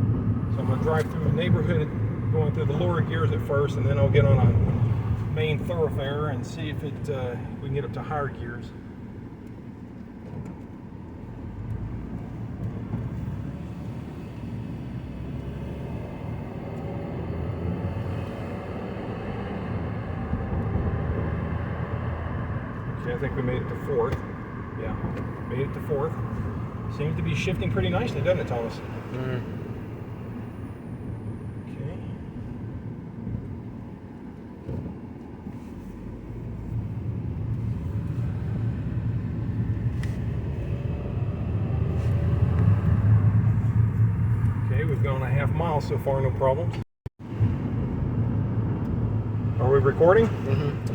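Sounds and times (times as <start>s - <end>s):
road noise: 0.0s - 50.9s
car engine accelerating: 10.0s - 34.9s, 35.5s - 50.9s.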